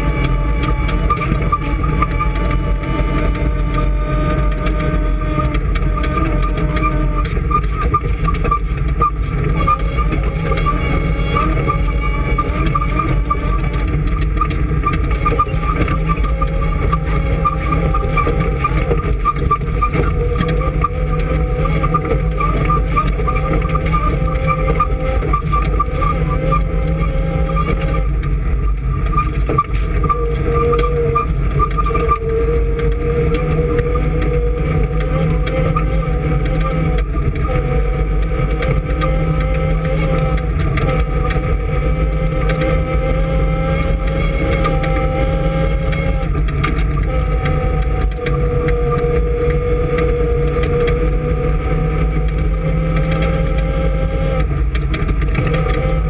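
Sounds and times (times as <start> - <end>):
vehicle engine running: 0.0 - 56.0.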